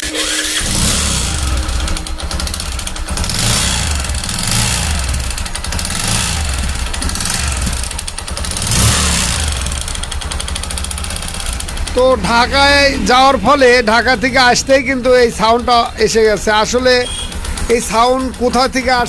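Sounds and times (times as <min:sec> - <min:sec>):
motorcycle engine knocking: 0:00.6 - 0:19.0.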